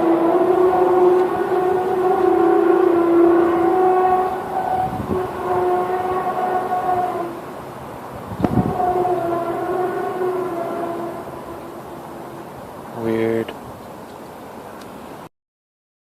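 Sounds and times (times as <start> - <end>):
horn-like drone: 0.0 - 13.5.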